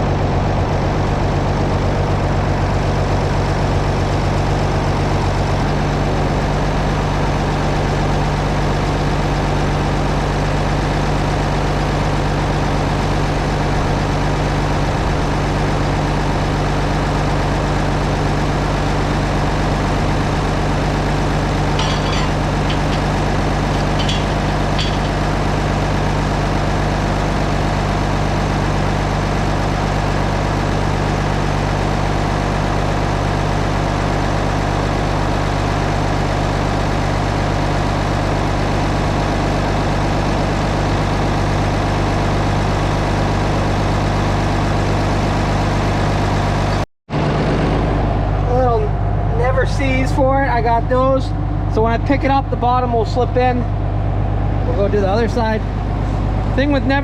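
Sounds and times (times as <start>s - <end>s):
tractor engine idling: 0.0s - 57.0s.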